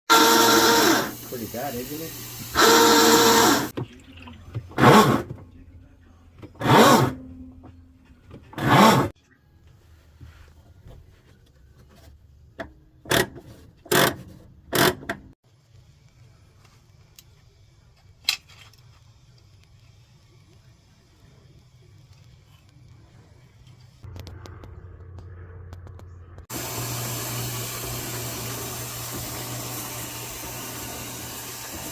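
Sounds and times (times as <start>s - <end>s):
washing machine grinding: 0.1s - 1.4s, 2.2s - 3.7s, 8.5s - 9.1s, 26.5s - 31.9s.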